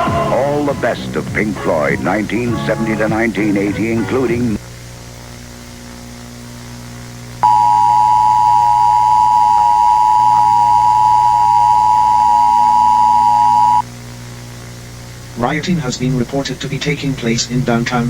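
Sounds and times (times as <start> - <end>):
low steady hum: 4.3 - 18.0
two-tone alarm: 7.4 - 13.8.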